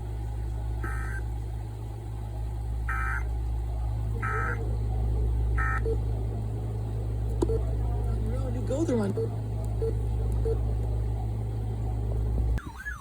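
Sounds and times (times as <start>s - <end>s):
steady low hum: 0.0s - 12.7s
digital data tones: 4.2s - 4.6s.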